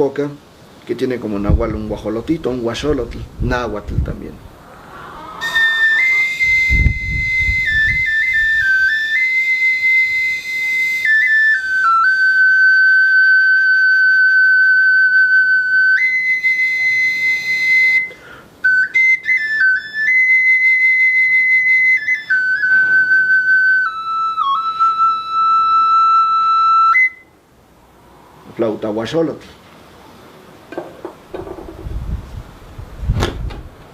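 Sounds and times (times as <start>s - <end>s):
high whistle-like flute: 4.7s - 27.4s.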